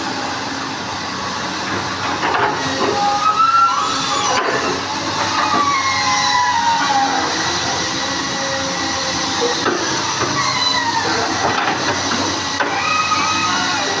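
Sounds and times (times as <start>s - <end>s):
high metallic squeals: 2.9s - 7.8s.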